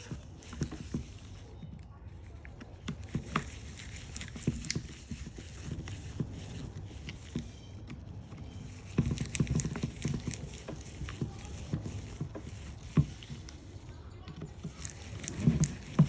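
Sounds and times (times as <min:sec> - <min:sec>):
plastic case being handled: 0:00.0 - 0:16.0
screwdriver clicks and knocks: 0:02.5 - 0:07.5, 0:08.6 - 0:16.0.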